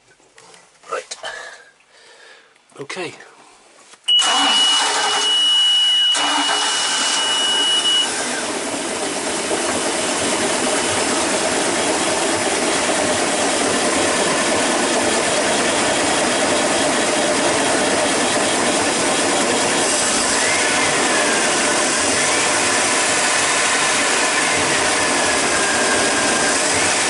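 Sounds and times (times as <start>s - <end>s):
high warning tone: 4.1s - 8.3s
boat engine running: 6.7s - 27.0s.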